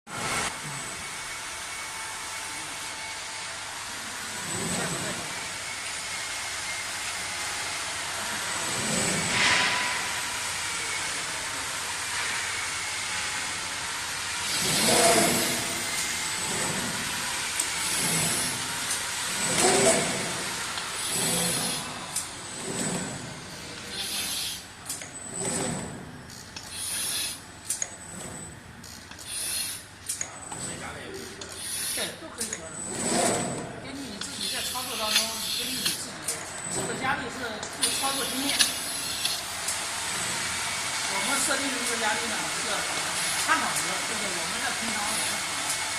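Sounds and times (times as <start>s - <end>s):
glass cutting machine hissing: 0.1s - 30.3s, 31.2s - 45.9s
sharp machine clicks: 26.3s - 30.4s, 34.1s - 36.5s, 37.6s - 39.8s
glass cutter scoring glass: 37.8s - 39.5s.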